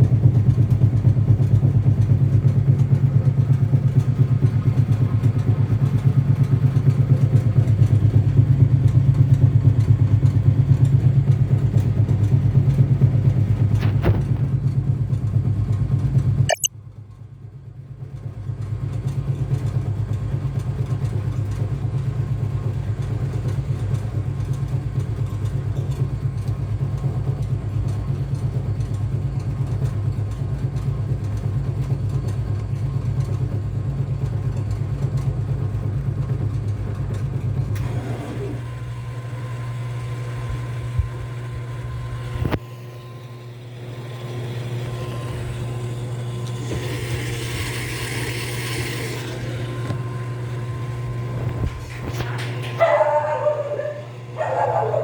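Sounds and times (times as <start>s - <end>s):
washing machine motor hum: 35.8s - 55.0s.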